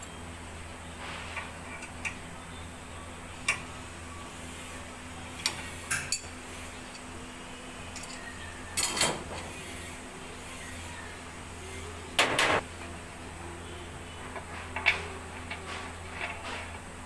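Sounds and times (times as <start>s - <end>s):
low steady hum: 0.0s - 17.0s
metal tools clinking: 8.0s - 9.2s.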